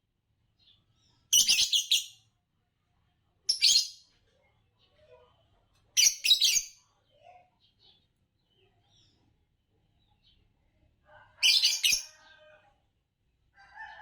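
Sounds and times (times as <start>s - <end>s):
lovebirds shrill chirps: 1.4s - 2.2s, 3.5s - 4.0s, 6.0s - 6.8s, 11.4s - 12.1s.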